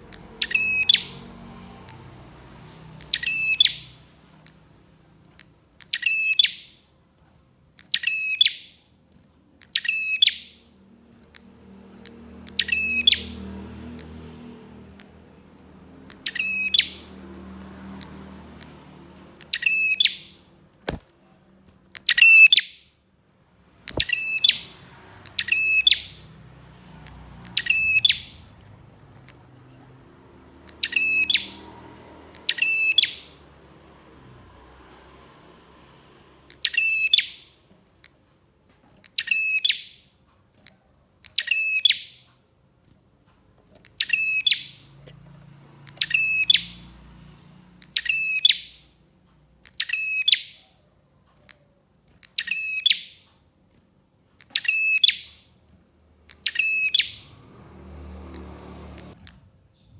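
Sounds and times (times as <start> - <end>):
bird calling high: 0.0 - 1.2, 23.9 - 26.3, 27.0 - 28.6, 30.6 - 31.6, 56.3 - 57.4.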